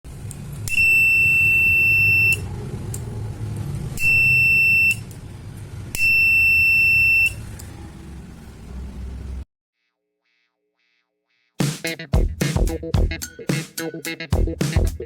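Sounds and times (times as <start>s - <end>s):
high-pitched buzzer beeps: 0.7s - 2.4s, 4.0s - 5.0s.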